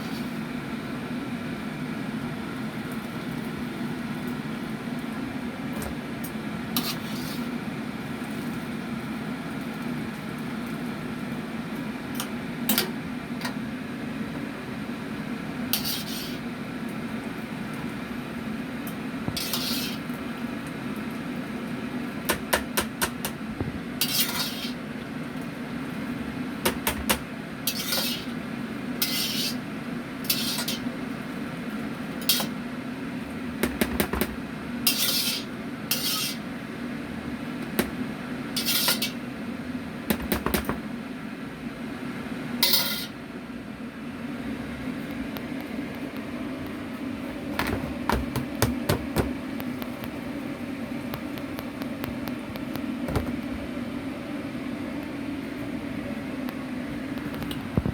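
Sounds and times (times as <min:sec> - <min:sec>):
utensils and dishes clattering: 0:38.6 - 0:39.2, 0:42.6 - 0:43.2.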